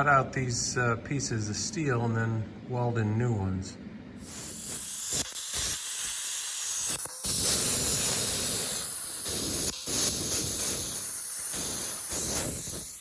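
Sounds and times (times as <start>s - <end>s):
plasma cutter hissing: 4.2s - 13.0s.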